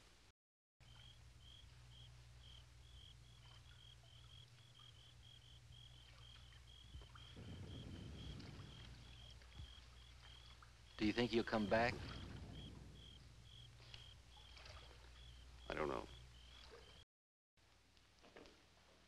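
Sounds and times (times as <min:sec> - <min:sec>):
low hum: 0:05.2 - 0:16.4
low rustling: 0:07.1 - 0:15.2.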